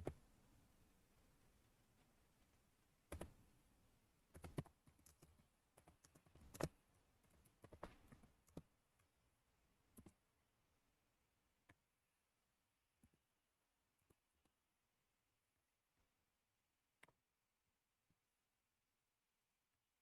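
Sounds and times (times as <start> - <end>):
mouse and keyboard clicks: 3.1 - 3.4, 4.3 - 9.1.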